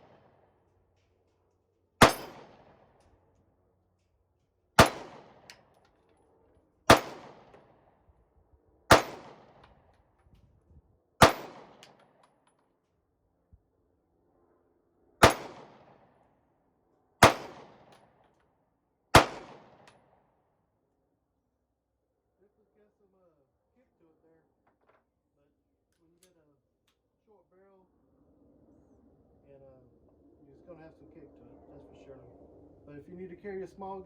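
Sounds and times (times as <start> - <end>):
pistol shots: 2.0 - 2.9, 4.8 - 5.6, 6.9 - 7.6, 8.9 - 9.6, 11.2 - 12.0, 15.2 - 16.0, 17.2 - 17.9, 19.1 - 19.9.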